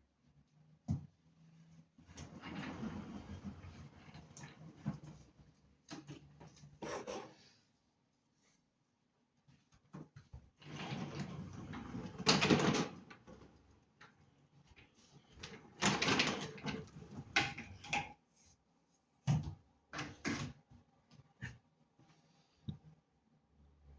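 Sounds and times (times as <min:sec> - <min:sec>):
caster wheels rolling on hard floor: 0:02.1 - 0:05.3, 0:10.6 - 0:13.6, 0:15.4 - 0:17.9.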